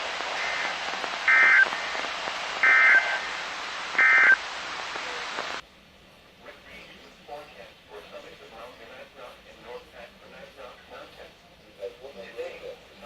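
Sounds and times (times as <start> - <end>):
digital data bursts: 0.0 - 5.6
radio hiss: 0.0 - 5.7.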